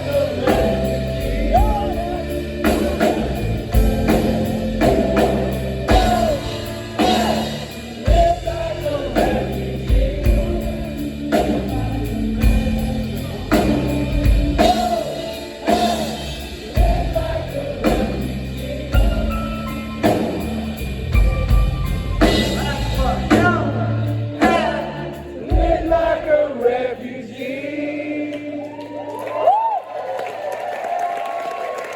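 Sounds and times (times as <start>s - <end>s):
person singing: 0.0s - 20.2s
live rock band playing: 0.0s - 26.3s
drum hits: 0.5s - 10.8s.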